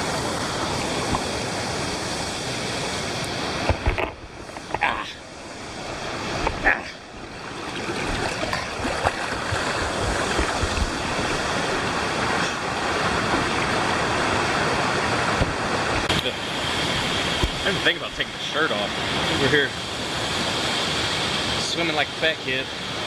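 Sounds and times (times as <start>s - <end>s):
rushing stream and waterfall: 0.0s - 23.0s
sharp splashes or knocks: 7.5s - 11.4s.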